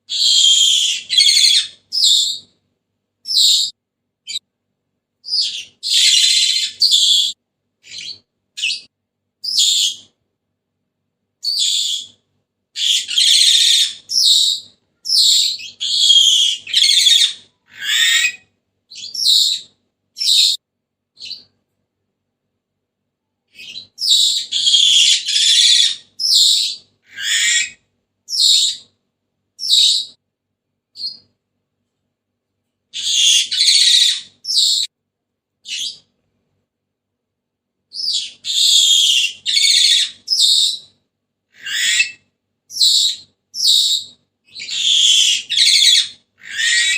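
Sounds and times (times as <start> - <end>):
parrot calling: 0.1 - 2.5, 3.2 - 4.4, 5.2 - 10.1, 11.4 - 12.2, 12.8 - 20.6, 23.6 - 28.9, 29.6 - 30.2, 33.0 - 34.9, 37.9 - 40.9, 41.5 - 46.9.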